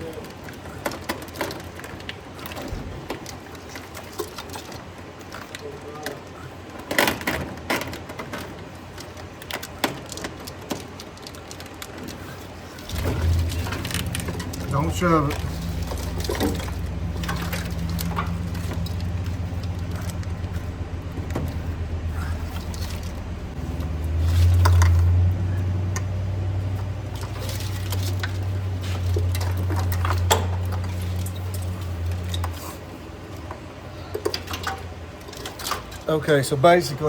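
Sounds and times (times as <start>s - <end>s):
wiring connectors clicking and rattling: 0.0s - 37.0s
low mechanical drone: 11.5s - 36.1s.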